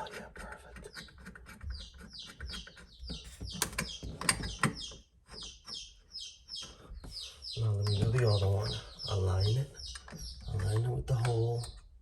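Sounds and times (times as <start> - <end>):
sharp clicks and knocks: 0.0 - 5.8, 9.8 - 11.9
bird chirping rapidly: 0.9 - 11.7.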